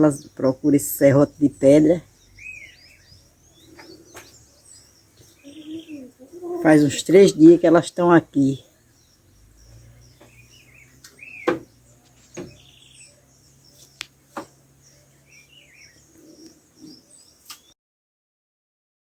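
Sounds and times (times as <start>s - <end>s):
bird chirps and calls: 0.0s - 17.7s
sharp clicks or knocks: 11.0s - 11.7s.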